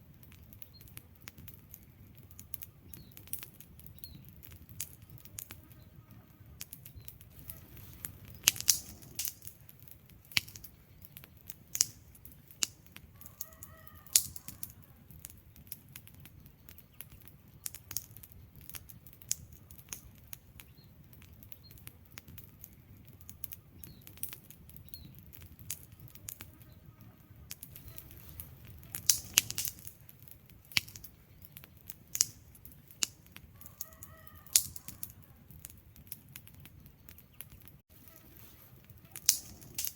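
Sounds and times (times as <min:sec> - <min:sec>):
wood fire crackling: 0:00.0 - 0:39.9
faint chirp-like calls: 0:25.8 - 0:29.6.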